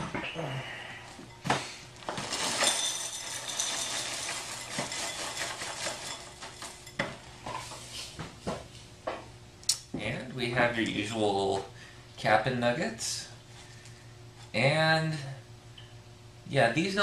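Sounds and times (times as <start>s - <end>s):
cereal pouring into a bowl: 2.2s - 6.8s.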